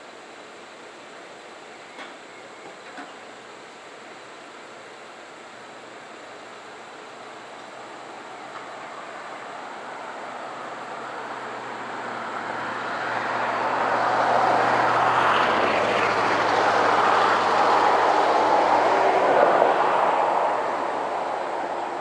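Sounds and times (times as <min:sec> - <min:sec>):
vehicle passing by: 0:10.7 - 0:22.0.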